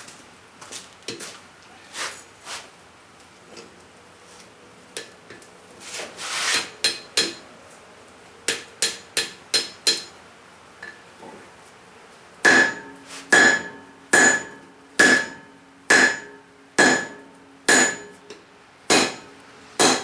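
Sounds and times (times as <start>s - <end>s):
rasping scrape: 5.8s - 6.8s
hammer striking steel on anvil: 6.6s - 7.5s, 8.5s - 10.2s, 12.4s - 20.0s.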